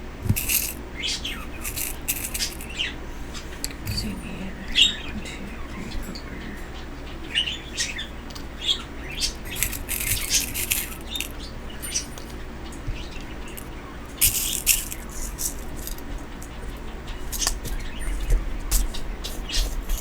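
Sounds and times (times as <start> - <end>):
craft pieces clicking and rattling: 0.2 - 2.7, 9.4 - 11.3, 13.6 - 16.0
bird chirping: 0.3 - 16.0.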